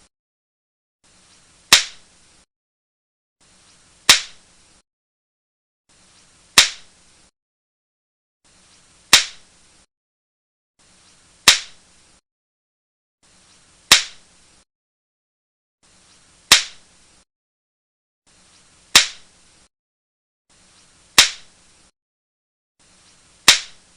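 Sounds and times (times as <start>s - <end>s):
sharp crack: 1.7s - 2.0s, 4.1s - 4.4s, 6.6s - 6.9s, 9.1s - 9.4s, 11.5s - 11.8s, 13.9s - 14.2s, 16.5s - 16.8s, 18.9s - 19.2s, 21.2s - 21.5s, 23.5s - 23.8s.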